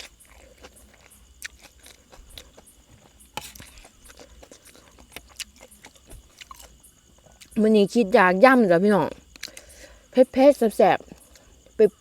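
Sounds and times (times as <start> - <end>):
chewing food: 0.0 - 7.6, 9.2 - 9.8
crickets chirring: 0.0 - 12.0.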